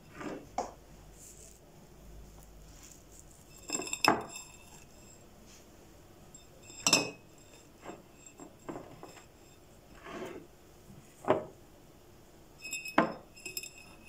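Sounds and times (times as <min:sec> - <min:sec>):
kitchenware clinking: 0:03.3 - 0:05.2, 0:06.3 - 0:10.4, 0:12.6 - 0:14.0.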